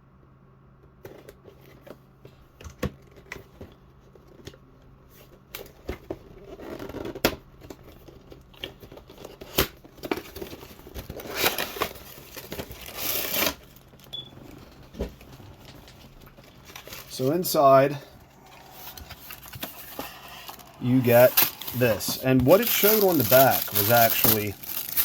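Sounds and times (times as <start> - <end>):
packaging rustling and tearing: 5.6 - 25.0.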